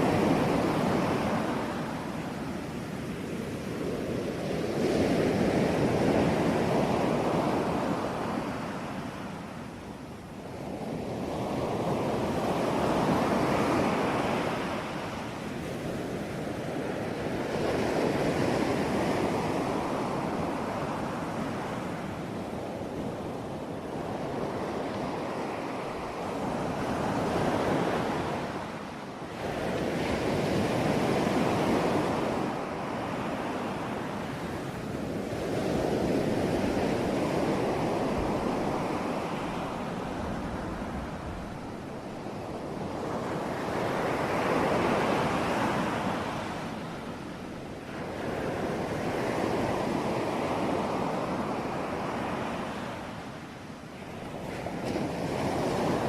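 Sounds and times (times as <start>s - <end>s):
sea waves breaking on shore: 0.0s - 56.0s.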